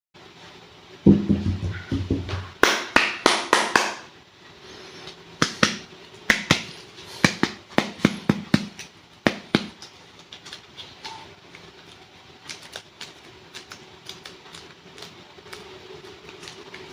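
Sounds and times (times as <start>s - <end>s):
clay packs crackling and snapping: 5.4s - 16.9s.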